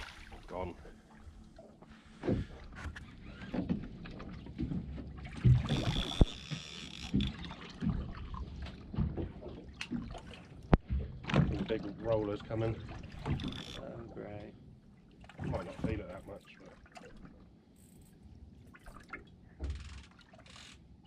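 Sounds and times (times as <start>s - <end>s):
water lapping against boat hull: 0.0s - 21.0s
knocks and clunks on board: 2.2s - 6.4s, 10.7s - 11.8s.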